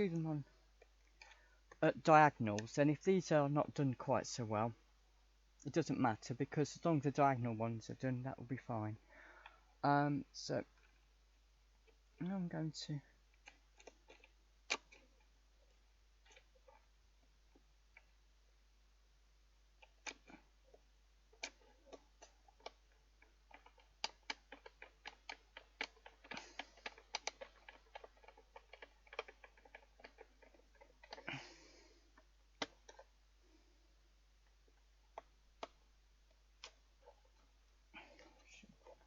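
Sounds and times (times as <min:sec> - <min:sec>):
screwdriver clicks and taps: 0:23.5 - 0:31.3.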